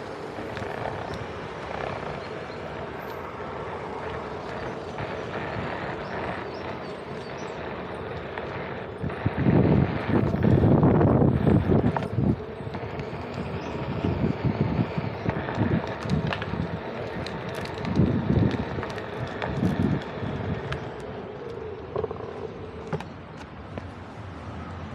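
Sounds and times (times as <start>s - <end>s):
wind buffeting microphone: 0.0s - 24.9s.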